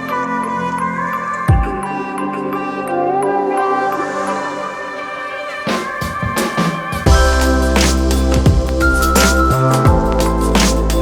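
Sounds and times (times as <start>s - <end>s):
background music with drum beat: 5.6s - 11.0s.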